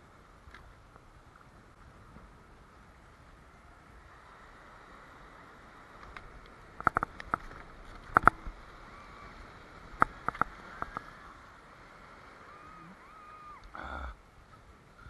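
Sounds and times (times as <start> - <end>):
sea and wind hiss: 0.0 - 15.0
faint gliding calls: 6.6 - 15.0.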